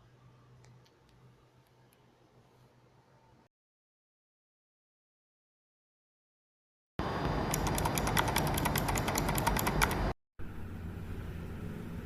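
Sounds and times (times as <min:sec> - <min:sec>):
low hum and hiss: 0:00.0 - 0:03.5
mechanical keyboard typing clicks: 0:07.5 - 0:10.1.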